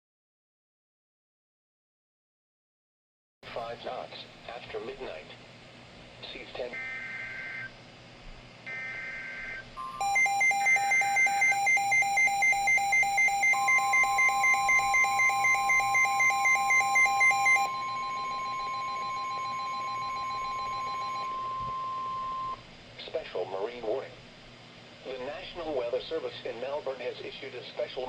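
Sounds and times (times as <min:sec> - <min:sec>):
loud pulsing alarm beep: 0:08.7 - 0:22.6
screechy two-tone data bursts: 0:08.7 - 0:22.6
steady single-pitch alarm tone: 0:08.7 - 0:22.6.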